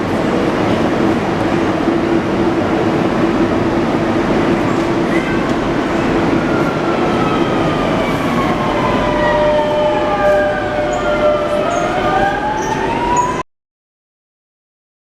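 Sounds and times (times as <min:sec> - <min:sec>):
steady noisy rumble: 0:00.0 - 0:09.2.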